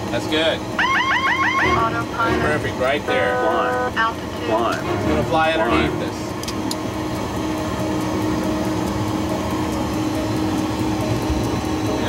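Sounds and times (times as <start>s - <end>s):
cockpit rushing hum: 0.6s - 12.0s.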